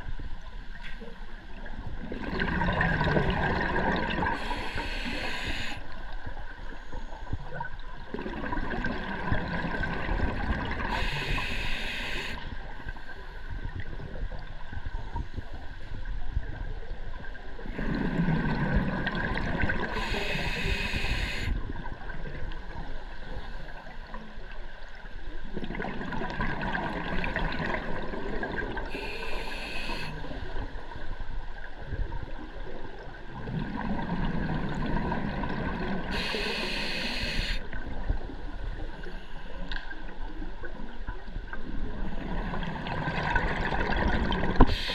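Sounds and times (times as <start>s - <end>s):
water sloshing and gurgling: 0.0s - 44.9s
short hiss: 36.2s - 37.6s.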